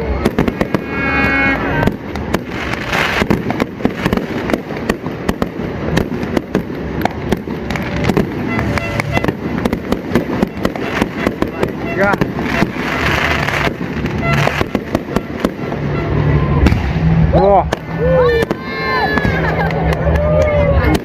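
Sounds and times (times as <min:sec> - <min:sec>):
fireworks bangs and crackles: 0:00.0 - 0:21.0
voices: 0:17.3 - 0:21.0.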